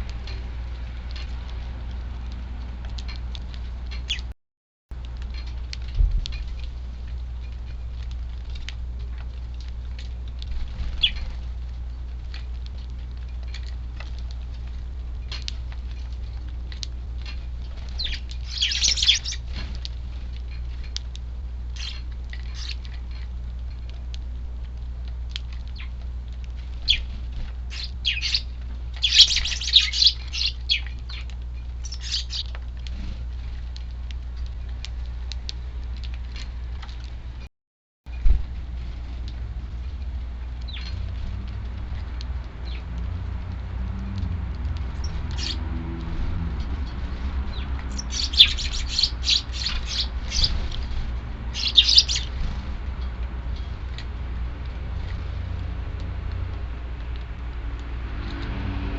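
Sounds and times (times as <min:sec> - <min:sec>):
low wind rumble: 0:00.0 - 0:04.3, 0:05.0 - 0:37.5, 0:38.1 - 0:58.9
sparrows chirping: 0:04.0 - 0:04.3, 0:10.9 - 0:11.3, 0:17.8 - 0:19.6, 0:21.7 - 0:22.9, 0:25.7 - 0:26.0, 0:26.8 - 0:32.6, 0:40.6 - 0:41.1, 0:42.6 - 0:42.9, 0:45.0 - 0:45.6, 0:46.7 - 0:52.7.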